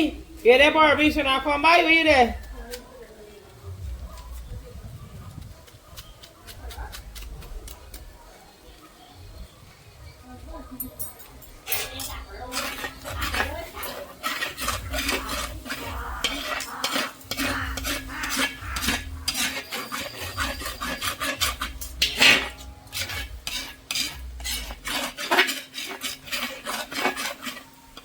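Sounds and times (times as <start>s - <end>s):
spoon scraping and knocking pot: 10.8s - 28.0s.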